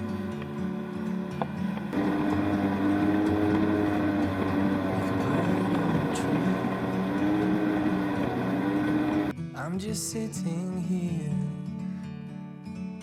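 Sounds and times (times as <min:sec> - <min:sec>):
jet ski engine running: 0:00.0 - 0:09.3.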